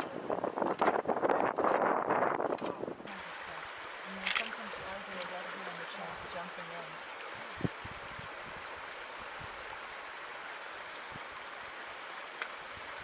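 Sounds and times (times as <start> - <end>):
faint click: 12.4 - 12.6.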